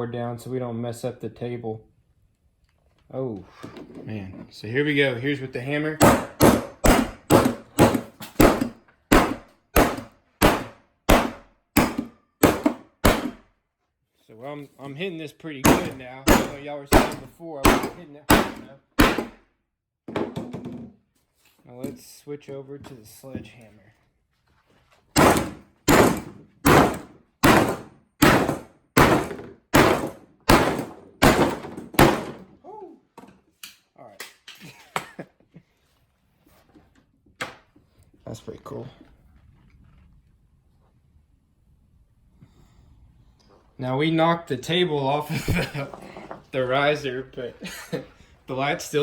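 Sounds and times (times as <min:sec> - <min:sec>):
hammer striking plastic light: 0:06.0 - 0:13.4, 0:15.7 - 0:19.4
sledgehammer blows dull thunk: 0:06.0 - 0:13.4, 0:15.6 - 0:19.4, 0:25.2 - 0:32.5.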